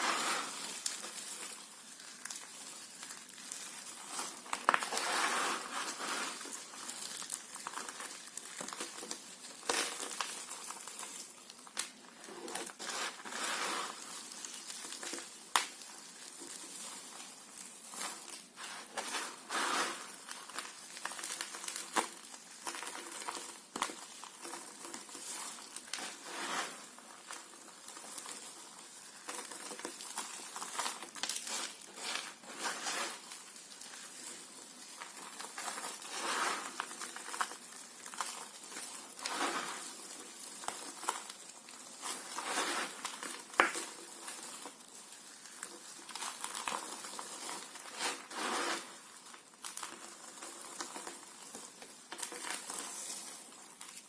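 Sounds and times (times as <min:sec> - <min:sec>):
knife cutting and scraping soap: 0:04.0 - 0:06.6, 0:30.8 - 0:33.3, 0:42.0 - 0:43.8, 0:47.4 - 0:49.0.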